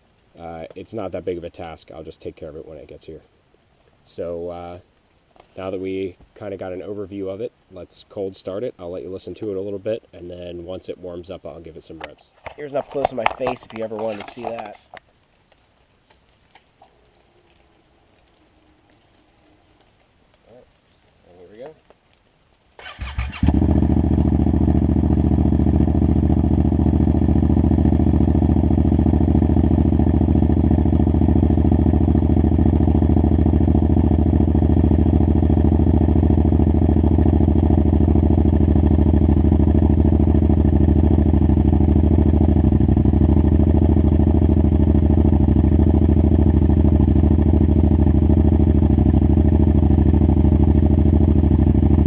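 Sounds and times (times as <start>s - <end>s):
starter motor cranking: 22.8s - 23.6s
motorcycle engine loud idle: 22.9s - 52.0s.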